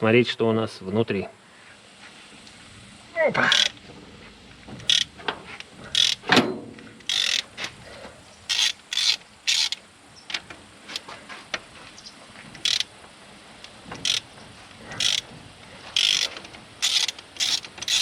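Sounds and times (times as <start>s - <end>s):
ratchet wrench clicking: 3.5s - 3.8s, 4.8s - 5.2s, 5.9s - 6.3s, 7.0s - 7.5s, 8.5s - 11.0s, 12.6s - 12.9s, 13.6s - 14.3s, 14.9s - 15.3s, 16.0s - 18.0s.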